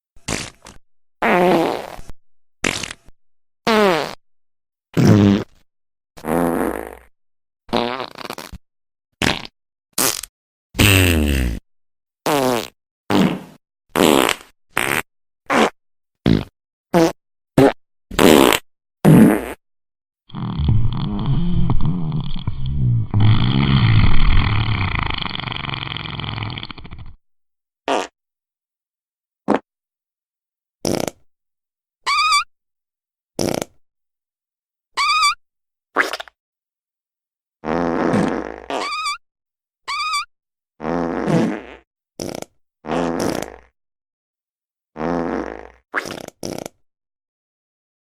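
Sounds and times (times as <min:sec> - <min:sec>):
short farts: 0:00.3 - 0:03.0, 0:05.0 - 0:05.6, 0:07.7 - 0:08.6, 0:09.2 - 0:11.6, 0:12.3 - 0:19.6, 0:20.3 - 0:27.2, 0:27.9 - 0:28.2, 0:29.5 - 0:29.7, 0:30.8 - 0:31.2, 0:33.4 - 0:33.8, 0:37.6 - 0:39.2, 0:40.8 - 0:43.7, 0:45.0 - 0:46.8
long low fart: 0:20.3 - 0:27.2, 0:33.4 - 0:33.7, 0:37.6 - 0:38.9, 0:40.8 - 0:43.7, 0:45.0 - 0:46.8.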